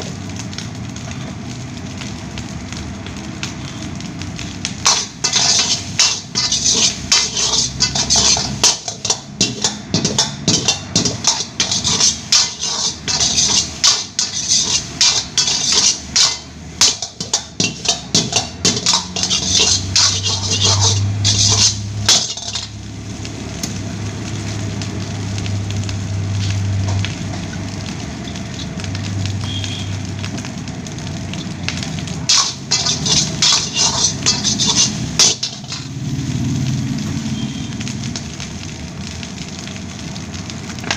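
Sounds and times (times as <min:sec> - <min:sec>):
frying hiss: 0:00.0 - 0:40.9
metal spatula clanging against wok: 0:04.7 - 0:22.8, 0:32.2 - 0:36.0.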